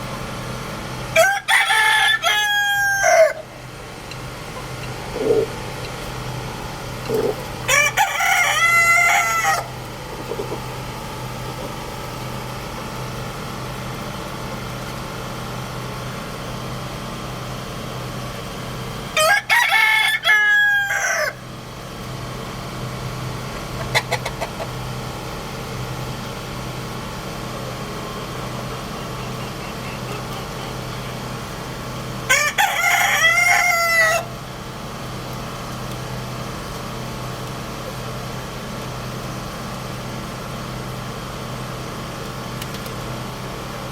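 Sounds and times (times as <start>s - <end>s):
steady low hum: 0.0s - 19.2s, 21.3s - 43.9s
roosters crowing: 1.0s - 12.2s, 19.1s - 21.6s, 29.0s - 35.0s
chicken clucks: 4.1s - 6.1s, 7.0s - 10.7s, 23.8s - 24.8s.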